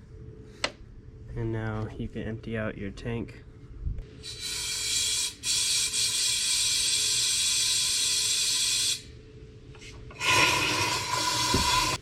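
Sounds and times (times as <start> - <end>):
compressed air hissing: 4.2 - 9.1.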